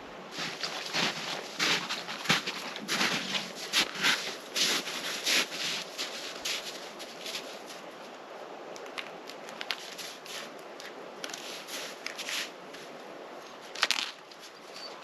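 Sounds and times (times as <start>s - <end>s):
footsteps crunching on forest floor: 0.3s - 7.8s.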